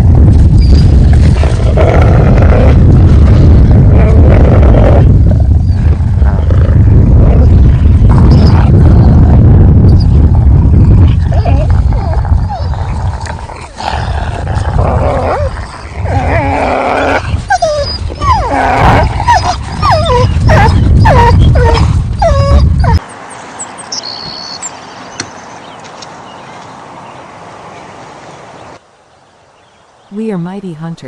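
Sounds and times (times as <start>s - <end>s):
low rumble: 0.0s - 23.0s
wolves yelping and whining: 11.2s - 23.1s.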